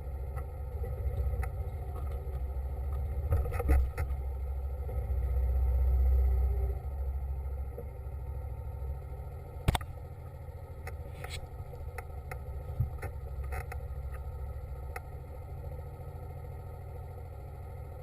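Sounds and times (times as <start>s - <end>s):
sharp click: 9.7s - 9.9s.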